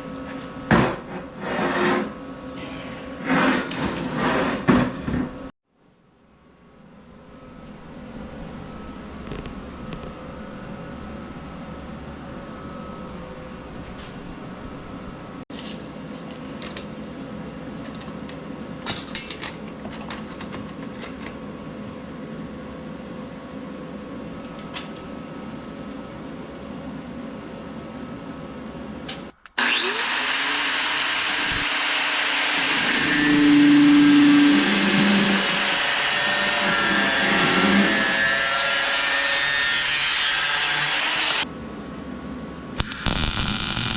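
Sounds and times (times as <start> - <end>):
electric power tool running: 29.6 - 38.0, 39.0 - 41.4, 42.8 - 43.9.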